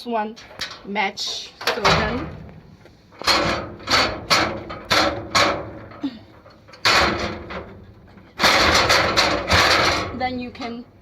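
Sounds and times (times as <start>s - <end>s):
sheet metal tray clunking: 3.2s - 6.0s, 6.6s - 10.3s.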